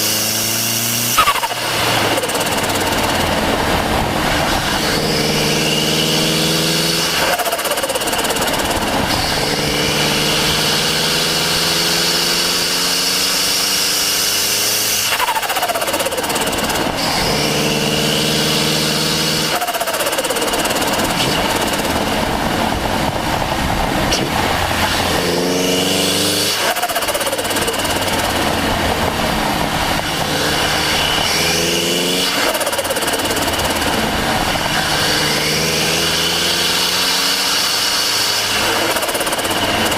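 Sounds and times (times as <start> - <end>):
car engine revving: 0.0 - 39.9
wind and road noise: 0.0 - 39.9
turbo whine: 14.7 - 39.9.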